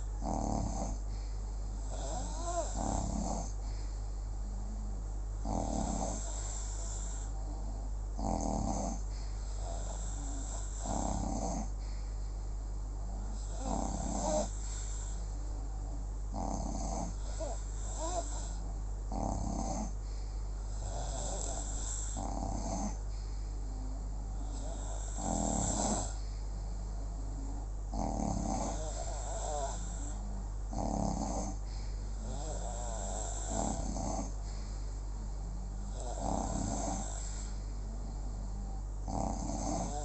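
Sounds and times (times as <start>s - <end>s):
snoring with whistling breath: 24.6s - 26.2s.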